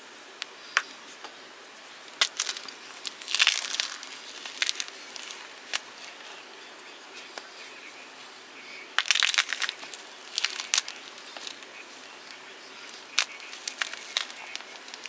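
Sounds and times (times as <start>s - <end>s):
chalk block crunching: 2.1s - 6.4s, 9.0s - 15.0s.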